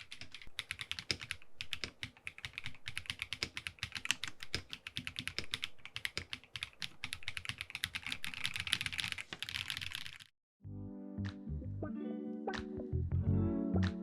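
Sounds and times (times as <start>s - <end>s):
mechanical keyboard typing: 0.0s - 10.3s.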